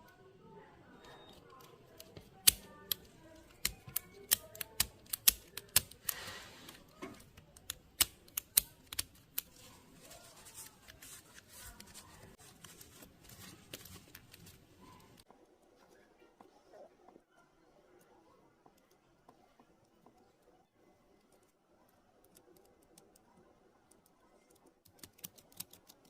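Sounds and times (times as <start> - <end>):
small tools clicking and tapping: 1.5 - 6.2.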